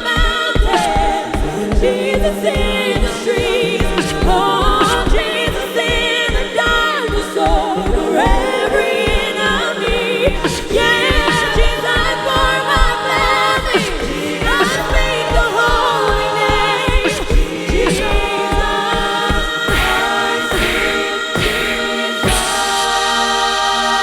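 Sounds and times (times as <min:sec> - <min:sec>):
singers with heavy vibrato: 0:00.0 - 0:24.0.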